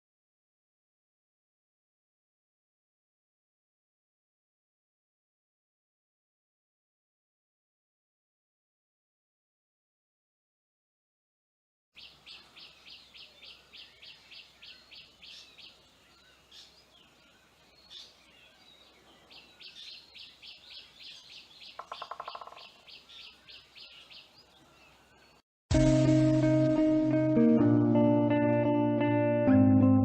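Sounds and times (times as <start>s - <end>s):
bird high chirps: 12.0s - 25.4s
other birds calling: 12.0s - 25.4s
low rattling bird trill: 17.8s - 24.3s.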